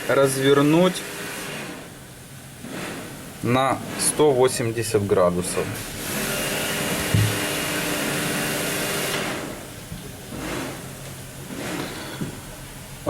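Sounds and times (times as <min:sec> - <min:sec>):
short low thump: 0:07.0 - 0:07.6.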